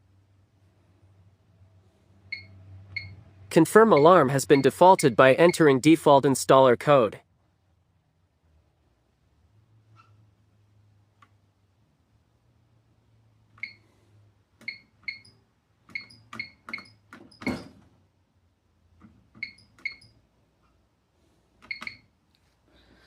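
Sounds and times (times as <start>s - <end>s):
keypad beeps: 2.3s - 3.2s, 3.8s - 5.7s, 13.6s - 13.8s, 14.6s - 17.5s, 19.4s - 20.2s, 21.6s - 22.1s.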